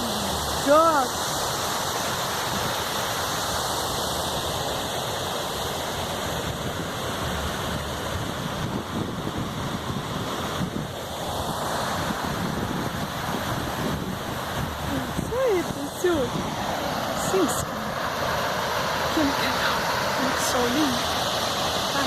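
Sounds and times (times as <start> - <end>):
rushing stream water: 0.0 - 22.0
wind noise on microphone: 6.3 - 16.8.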